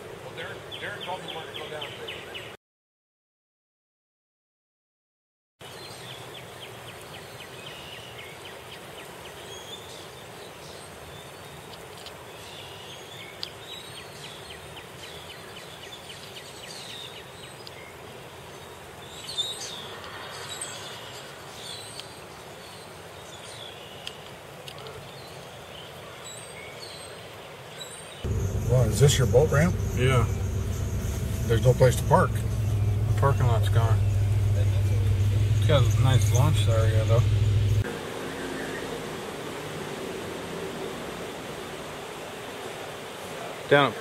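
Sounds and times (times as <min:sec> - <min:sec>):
birds chirping and calling: 0:27.8 - 0:37.8
steady rushing background noise: 0:28.3 - 0:43.9.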